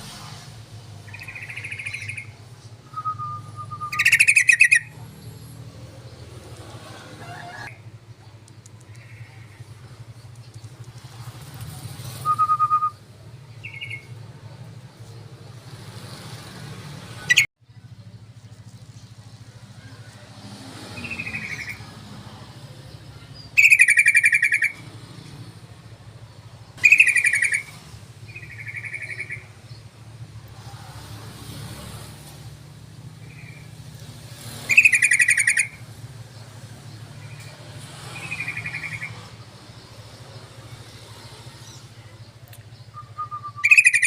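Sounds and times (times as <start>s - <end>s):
bird calling in bubbly phrases: 1.1s - 4.9s, 23.5s - 24.8s, 26.8s - 27.7s, 34.7s - 35.8s, 42.9s - 44.0s.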